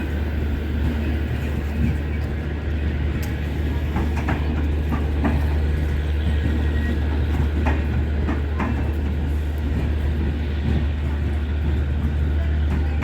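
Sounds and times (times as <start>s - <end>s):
train rumbling along track: 0.0s - 13.0s
wheels clicking over rail joints: 0.0s - 13.0s.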